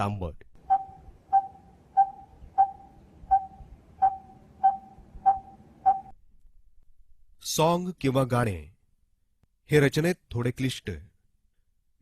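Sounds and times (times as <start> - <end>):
bird repeating short tuk notes: 0.6 - 6.1.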